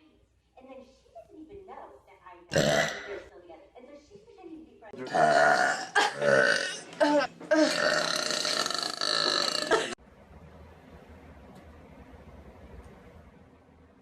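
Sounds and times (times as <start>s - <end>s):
faint room noise: 0.0s - 14.0s
person burping loudly: 2.5s - 3.2s, 5.0s - 10.0s.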